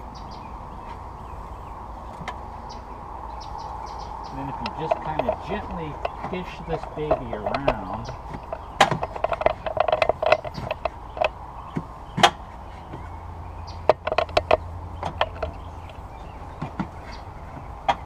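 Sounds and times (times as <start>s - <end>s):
steady low hum: 0.0s - 18.0s
intake parts clicking and knocking: 4.3s - 18.0s.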